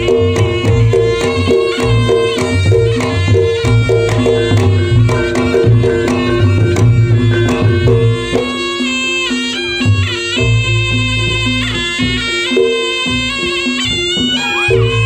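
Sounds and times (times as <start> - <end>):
fast hand drum strokes: 0.0 - 15.0
reed instrument melody: 0.0 - 15.0
ringing gongs: 14.2 - 15.0.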